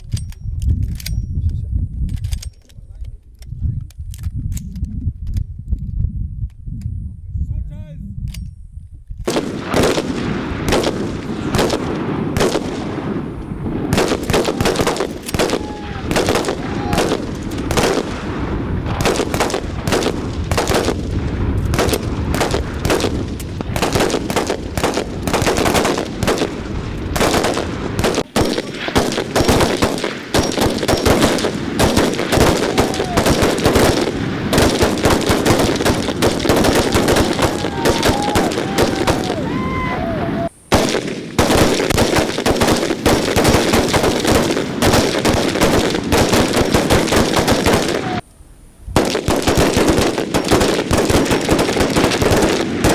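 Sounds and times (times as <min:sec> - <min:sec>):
gunfire: 0:09.3 - 0:48.2, 0:49.0 - 0:52.9
machine-gun bursts: 0:13.9 - 0:18.2, 0:18.9 - 0:21.0, 0:21.8 - 0:39.5, 0:40.7 - 0:48.2, 0:49.0 - 0:52.9.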